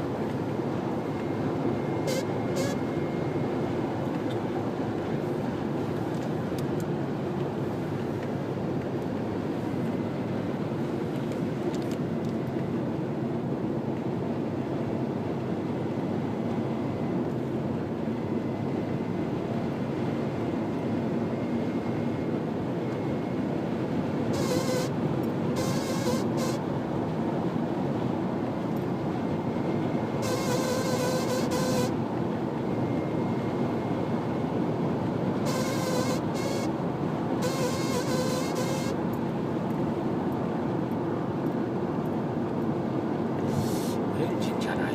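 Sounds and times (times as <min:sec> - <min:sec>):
car engine and road noise: 0:00.0 - 0:44.9
faint steady whine: 0:00.0 - 0:44.9
short buzzing bursts: 0:24.4 - 0:24.9, 0:25.6 - 0:26.6, 0:30.2 - 0:31.9, 0:35.5 - 0:36.7, 0:37.4 - 0:39.0.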